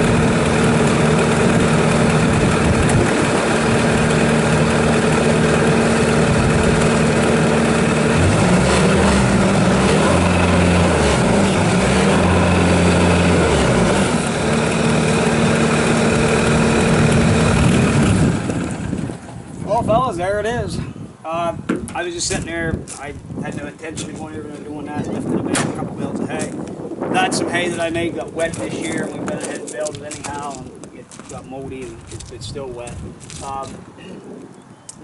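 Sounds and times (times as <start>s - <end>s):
loader diesel engine running: 0.0s - 19.6s.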